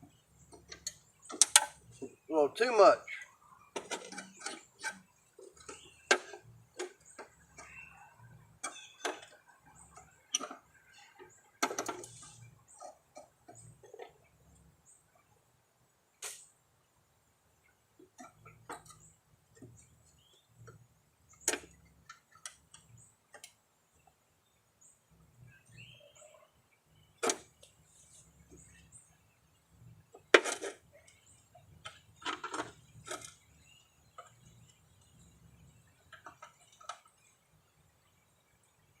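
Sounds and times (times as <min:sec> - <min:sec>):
hand tools clicking and knocking: 0:00.5 - 0:01.8.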